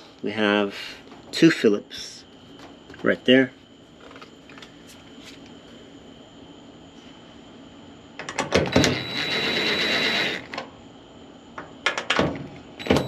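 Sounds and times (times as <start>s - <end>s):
cordless screwdriver running: 9.0s - 10.5s.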